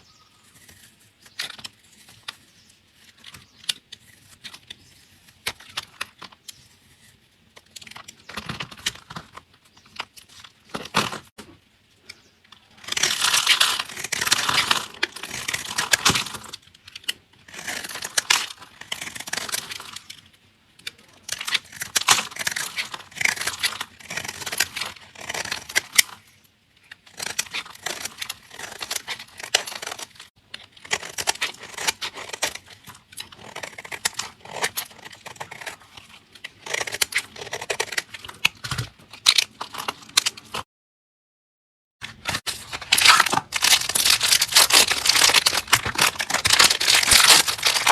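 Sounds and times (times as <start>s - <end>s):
blade crunching through soap: 12.6s - 20.2s, 21.3s - 26.3s, 26.9s - 40.6s, 42.1s - 47.9s.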